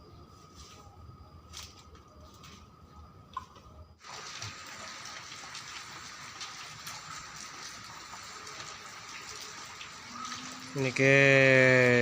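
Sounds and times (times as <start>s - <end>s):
rain falling: 4.0s - 12.0s.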